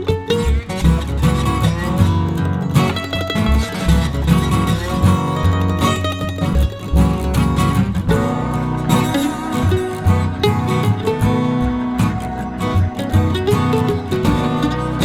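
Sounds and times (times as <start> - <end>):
plucked guitar music: 0.0 - 15.0
steady bass line: 3.5 - 15.0.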